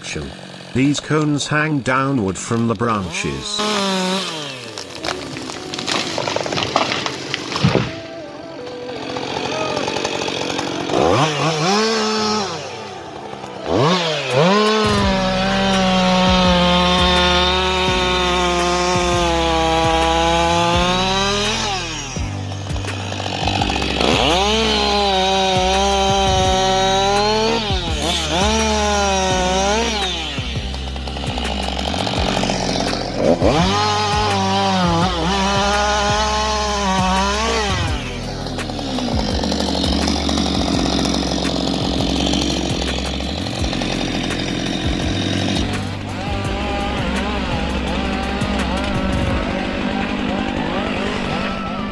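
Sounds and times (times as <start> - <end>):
chainsaw engine revving: 0.0 - 51.9.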